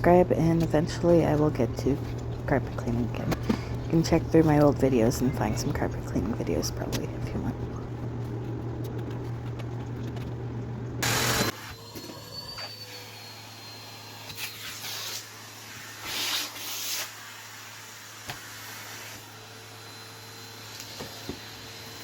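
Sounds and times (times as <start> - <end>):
vacuum cleaner running: 0.0 - 22.0
whine: 2.8 - 15.0.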